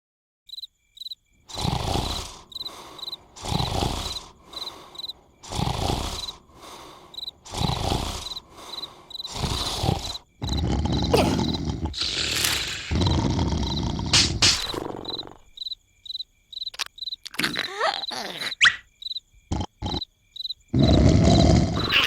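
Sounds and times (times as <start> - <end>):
crickets chirping: 0.5 - 22.0
cartoon snoring: 1.5 - 15.6, 17.3 - 18.6, 19.5 - 20.1, 20.7 - 22.0.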